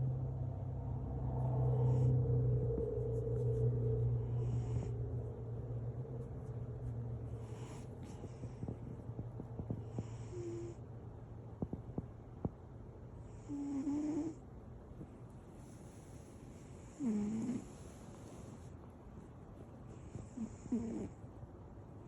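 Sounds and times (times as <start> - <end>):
cat snoring: 1.4 - 2.5, 4.2 - 5.2, 7.4 - 8.8, 9.6 - 10.8, 13.2 - 14.4, 16.7 - 18.7, 19.9 - 21.2.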